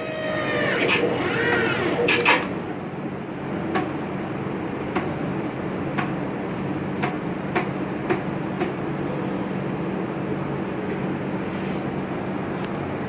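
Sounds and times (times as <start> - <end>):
hose crimping machine running: 0.0 - 2.6.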